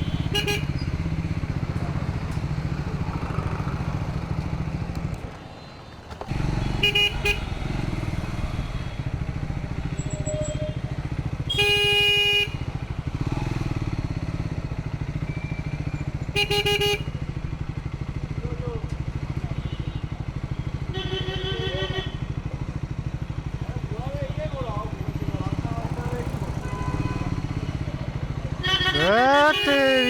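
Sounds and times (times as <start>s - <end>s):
vehicle horns honking: 0.0s - 1.0s, 5.5s - 13.4s, 16.2s - 17.6s, 19.5s - 22.4s, 26.2s - 27.8s, 28.6s - 30.0s
motorcycle engine running: 0.0s - 5.2s, 6.3s - 30.0s.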